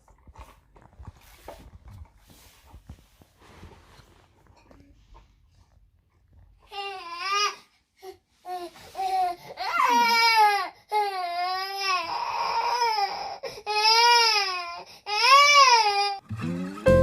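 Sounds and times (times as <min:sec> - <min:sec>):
small child crying: 0:09.0 - 0:16.2.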